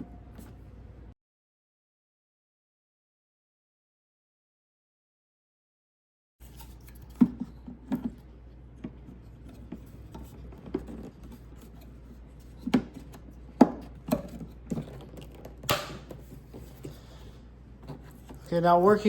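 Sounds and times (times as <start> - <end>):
plastic parts clicking and knocking: 12.5 - 17.0.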